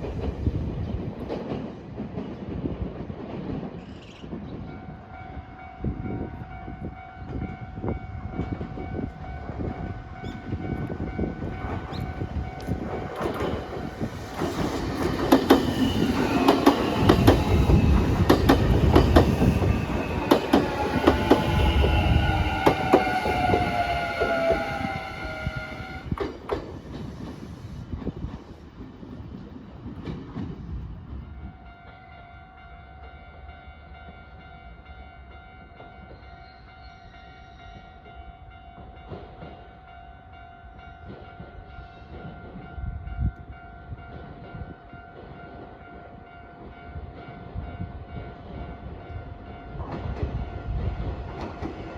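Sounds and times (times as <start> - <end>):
electric train passing: 0.0 - 51.9
crossing warning bell ringing: 4.8 - 26.1
train wheels clacking on rail joints: 10.1 - 30.8, 49.4 - 51.9.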